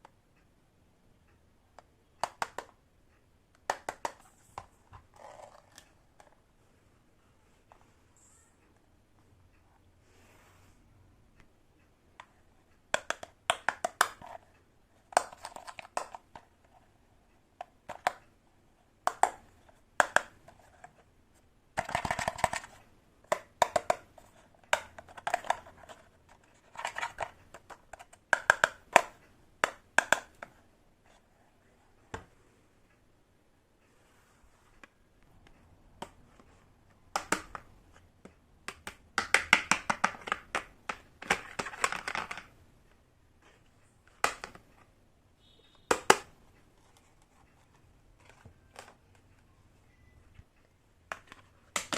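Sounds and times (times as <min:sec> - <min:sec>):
toy kitchen pieces clicking: 0:13.0 - 0:16.5, 0:38.8 - 0:42.6.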